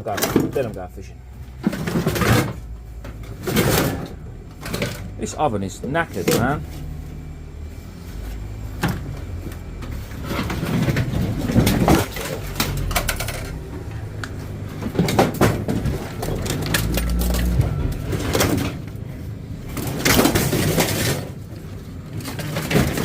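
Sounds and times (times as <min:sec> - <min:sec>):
scrap metal knocks and clanks: 0:01.6 - 0:05.2, 0:08.8 - 0:19.0, 0:19.7 - 0:21.5.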